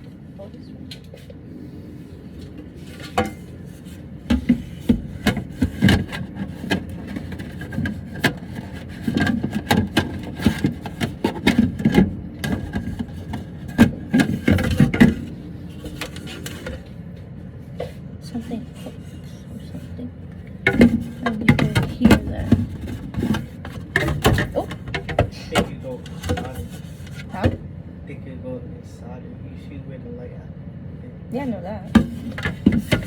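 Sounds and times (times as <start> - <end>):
objects knocking and scraping: 2.4 - 17.0, 17.8 - 27.6, 31.9 - 33.0.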